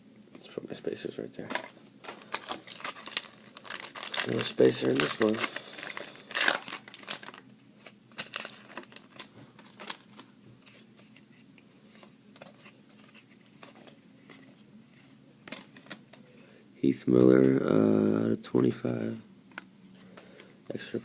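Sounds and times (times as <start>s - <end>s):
foil wrapper crinkling: 2.1s - 10.3s
cards being handled: 15.4s - 16.2s.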